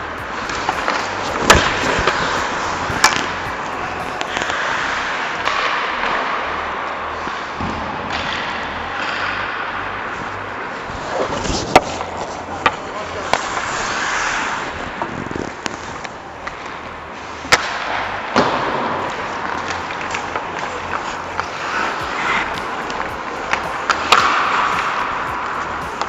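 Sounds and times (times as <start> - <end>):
arena din: 0.0 - 5.6, 21.3 - 26.0.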